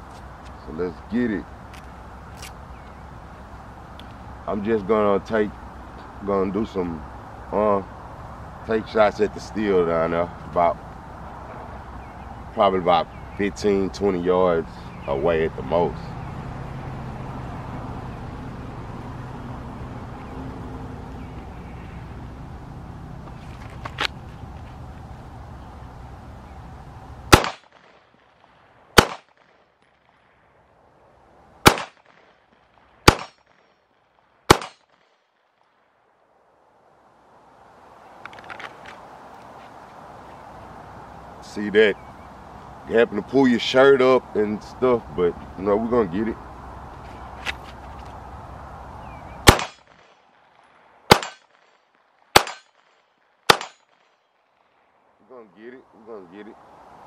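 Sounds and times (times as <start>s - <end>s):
pistol shots: 27.3s - 28.0s, 29.0s - 29.6s, 31.6s - 32.3s, 33.0s - 33.6s, 34.5s - 35.0s, 49.4s - 50.1s, 51.1s - 51.6s, 52.3s - 52.9s, 53.5s - 54.0s.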